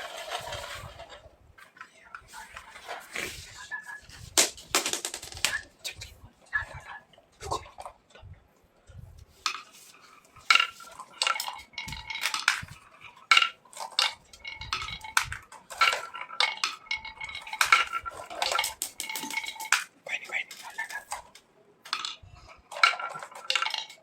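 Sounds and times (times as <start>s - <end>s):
small hard objects clinking: 10.3s - 19.9s, 21.8s - 24.0s.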